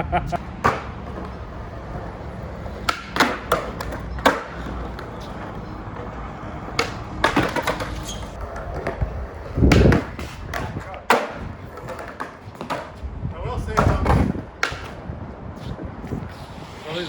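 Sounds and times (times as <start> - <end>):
skateboard wheels rolling: 0.2 - 17.0
skateboard wooden clacks: 0.3 - 6.1, 6.7 - 13.0, 13.7 - 15.1.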